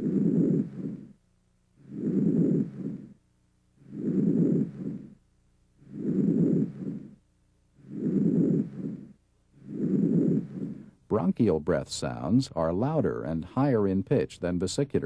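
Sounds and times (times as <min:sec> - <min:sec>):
breath sounds through stethoscope: 0:01.8 - 0:03.2, 0:03.8 - 0:05.2, 0:05.8 - 0:07.2, 0:07.8 - 0:11.1.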